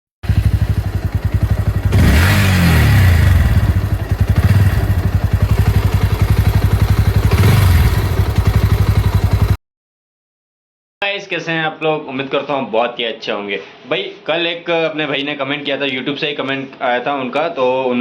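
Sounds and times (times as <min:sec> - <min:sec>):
motorcycle engine idling and revving: 0:00.2 - 0:09.6.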